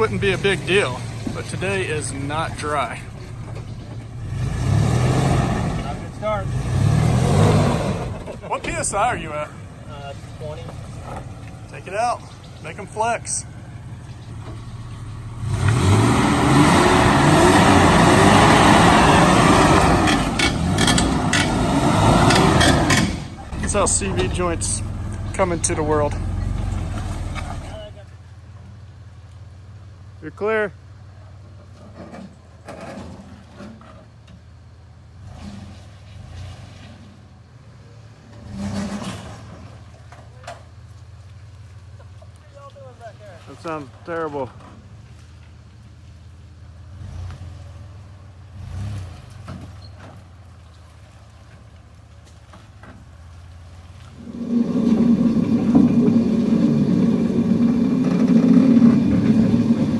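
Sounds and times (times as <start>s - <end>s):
off-road engine revving: 0.0s - 28.2s, 35.1s - 40.7s, 45.8s - 51.6s, 52.8s - 59.9s.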